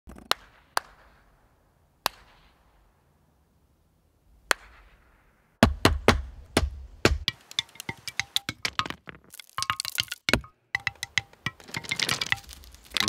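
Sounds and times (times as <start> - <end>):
fast run of knocks: 7.1 - 13.0.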